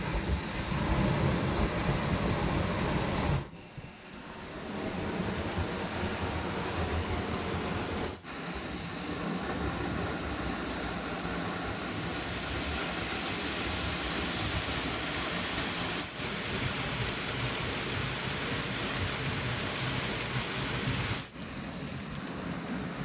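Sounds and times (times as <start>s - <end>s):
waterfall rushing hiss: 0.8s - 3.5s, 4.6s - 21.4s.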